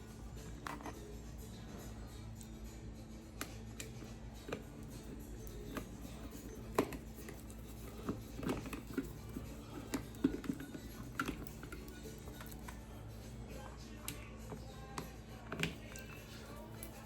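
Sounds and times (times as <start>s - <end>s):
steady low hum: 0.0s - 17.0s
tools clicking and tapping: 3.4s - 12.8s.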